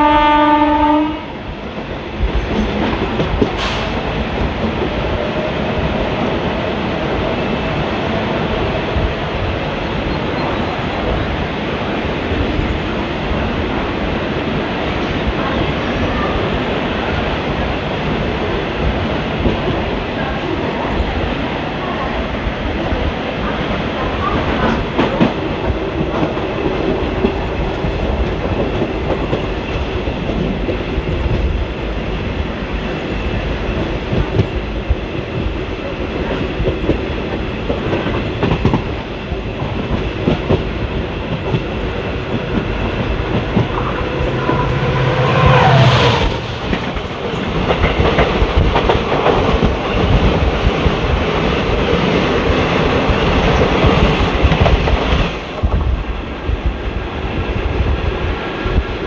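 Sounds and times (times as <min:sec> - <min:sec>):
train coach rumble: 0:00.0 - 0:58.3
brief whine: 0:43.6 - 0:47.2.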